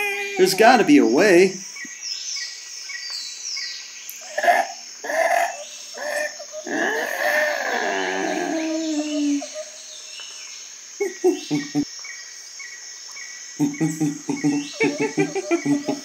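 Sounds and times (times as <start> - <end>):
crickets chirring: 0.0 - 16.0
falling pitched call: 4.2 - 10.0.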